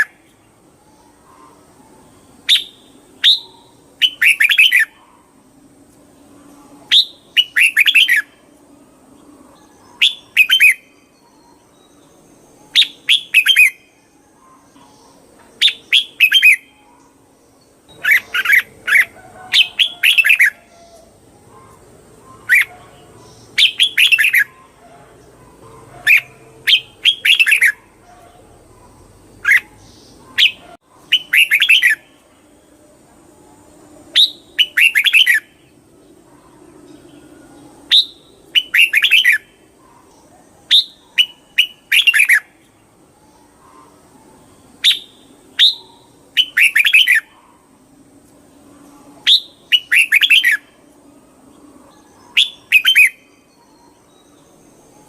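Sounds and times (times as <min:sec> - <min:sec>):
bird singing bright notes: 0:48.7 - 0:50.9, 0:51.8 - 0:55.0.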